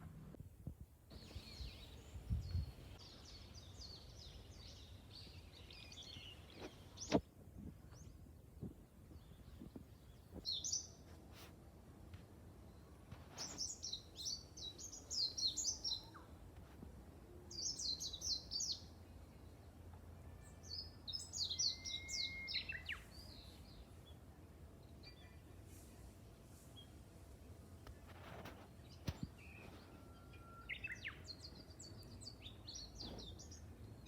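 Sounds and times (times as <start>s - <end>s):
songbird twittering: 21.2s - 23.5s
bird steady whistle: 21.6s - 23.0s.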